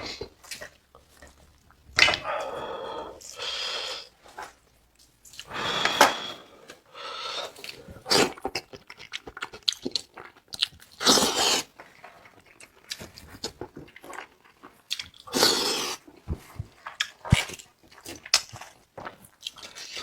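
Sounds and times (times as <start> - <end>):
person chewing wetly: 7.4 - 20.0.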